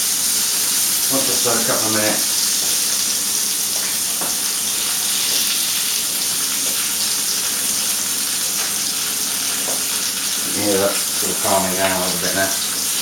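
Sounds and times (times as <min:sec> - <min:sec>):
chicken sizzling in oil: 0:00.0 - 0:13.0.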